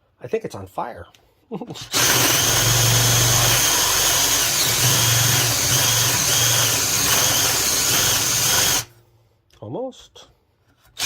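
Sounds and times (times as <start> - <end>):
electric drill boring into wood: 1.8 - 8.9.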